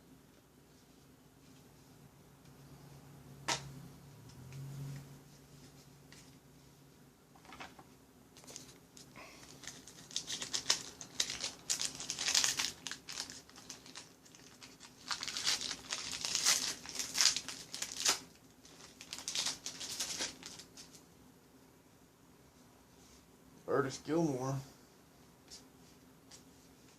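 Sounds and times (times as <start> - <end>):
wrappers tearing and crinkling: 8.4 - 21.0.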